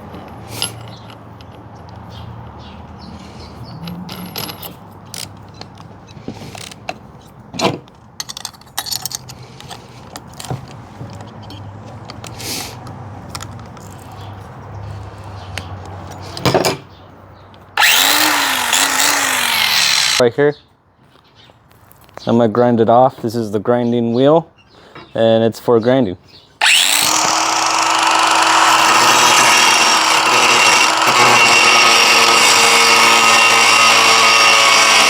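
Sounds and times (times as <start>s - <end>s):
metallic clicks and rattles of handling: 8.2s - 12.4s, 13.3s - 14.2s
angle grinder running loudly: 17.8s - 20.2s, 26.6s - 35.0s.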